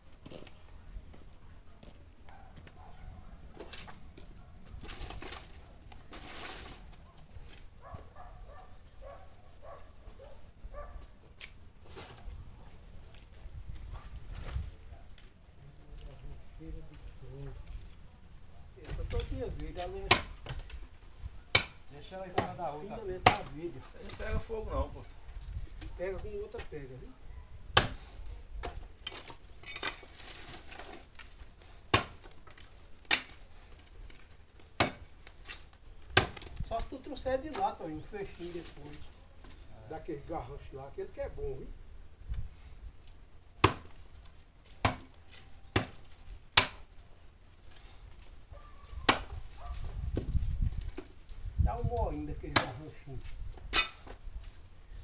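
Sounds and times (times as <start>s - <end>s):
branches rustling: 0.0s - 55.0s
firewood knocking and clattering: 18.8s - 21.8s.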